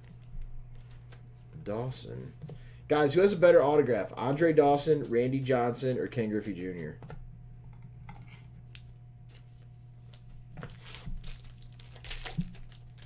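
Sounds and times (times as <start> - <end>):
steady low hum: 0.0 - 13.0
cards and wrappers crinkling: 8.7 - 13.0.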